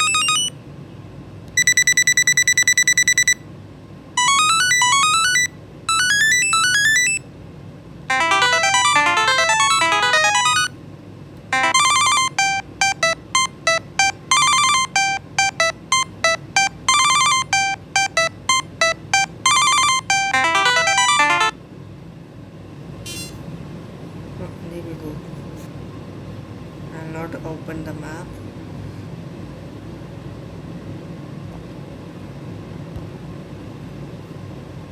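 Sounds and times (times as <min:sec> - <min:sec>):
electronic alert melody beeping: 0:00.0 - 0:00.5, 0:01.6 - 0:03.4, 0:04.2 - 0:07.2, 0:08.1 - 0:10.7, 0:11.6 - 0:21.5.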